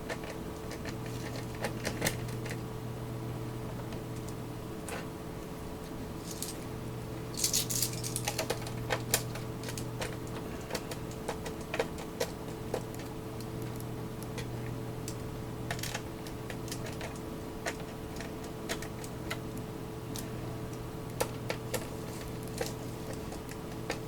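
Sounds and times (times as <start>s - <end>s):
steady low hum: 0.0s - 24.0s
tools and parts clicking: 7.4s - 9.8s.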